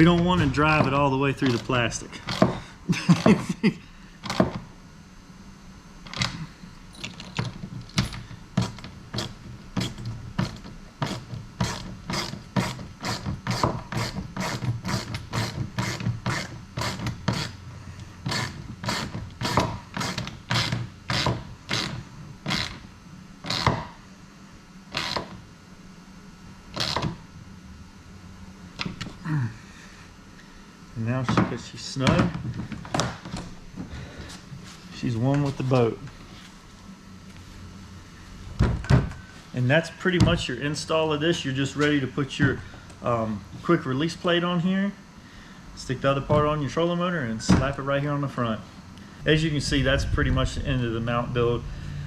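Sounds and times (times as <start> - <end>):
hand ratchet clicking: 18.3 - 22.8.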